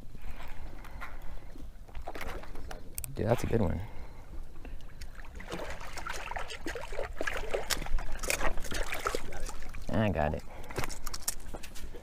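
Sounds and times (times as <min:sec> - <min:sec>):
fish thrashing and splashing water: 0:01.9 - 0:03.0, 0:04.8 - 0:11.6.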